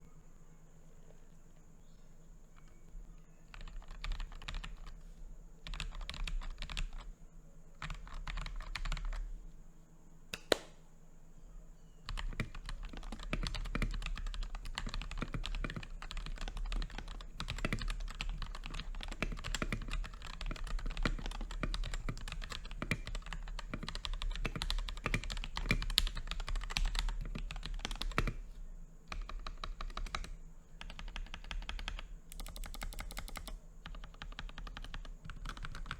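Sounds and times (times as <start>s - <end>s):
mechanical keyboard typing: 3.5s - 5.0s, 5.6s - 7.1s, 7.8s - 9.3s, 12.1s - 28.4s, 29.1s - 35.9s
sharp keyboard click: 10.3s - 10.8s, 29.1s - 35.9s.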